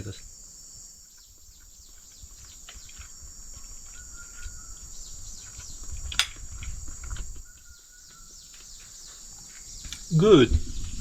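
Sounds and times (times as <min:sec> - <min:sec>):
high-pitched insect chorus: 0:00.0 - 0:11.0
sharp click: 0:06.1 - 0:06.4.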